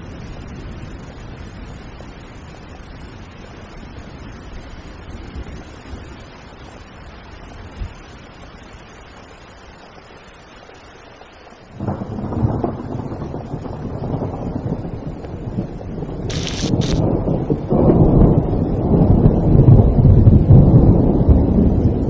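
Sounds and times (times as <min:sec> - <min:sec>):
steady rain hiss: 0:00.0 - 0:22.0
thunder rumbling: 0:11.8 - 0:22.0.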